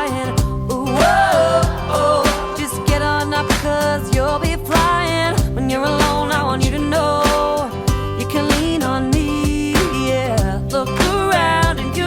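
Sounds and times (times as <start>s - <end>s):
upbeat pop song: 0.0s - 12.0s.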